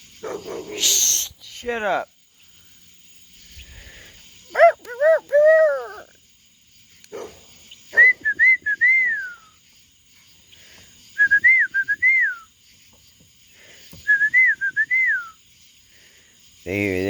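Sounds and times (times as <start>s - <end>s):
man whistling: 4.6s - 6.0s, 8.0s - 9.6s, 11.2s - 12.5s, 14.0s - 15.4s.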